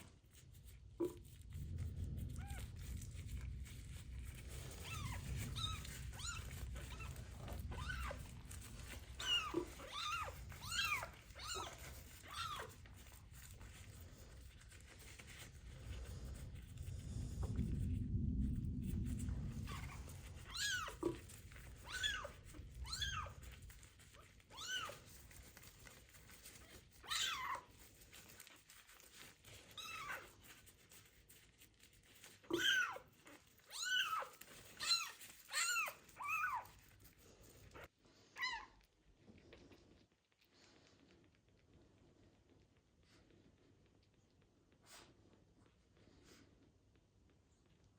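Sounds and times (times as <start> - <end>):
low rumble: 0.0 - 25.5
kitten meowing: 4.8 - 12.8, 19.6 - 23.4, 24.5 - 25.0, 27.0 - 27.7, 29.8 - 30.3, 32.4 - 33.1, 33.7 - 36.7.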